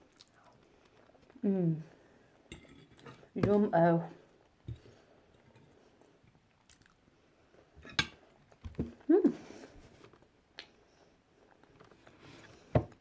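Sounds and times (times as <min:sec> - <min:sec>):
person chewing food: 0:06.5 - 0:07.0.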